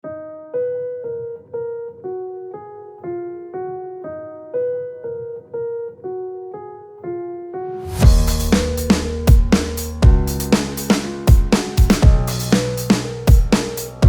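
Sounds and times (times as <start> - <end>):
electric piano melody: 0.0 - 14.0.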